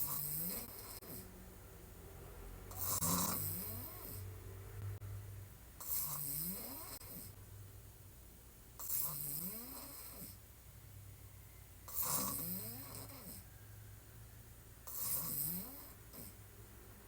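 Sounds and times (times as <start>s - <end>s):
woman snoring: 0.0s - 1.3s, 2.7s - 4.3s, 5.8s - 7.4s, 8.8s - 10.4s, 11.9s - 13.5s, 14.9s - 16.4s.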